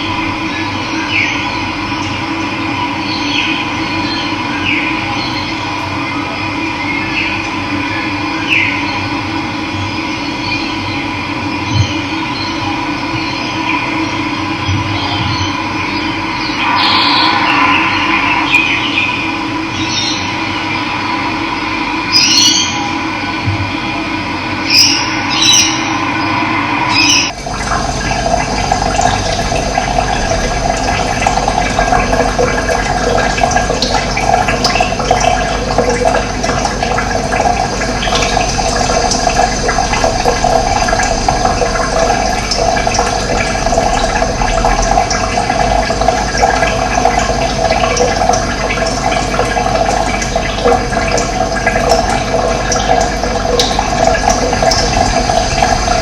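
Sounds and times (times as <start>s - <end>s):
running water flowing: 13.4s - 22.8s, 24.6s - 56.0s
steady tones: 16.1s - 22.1s, 24.0s - 56.0s.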